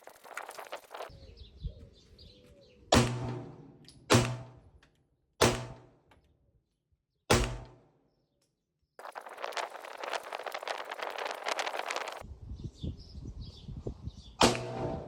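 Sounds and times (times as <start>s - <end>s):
pistol shots with echo: 2.9s - 3.5s, 4.1s - 4.6s, 5.4s - 5.9s, 7.3s - 7.8s.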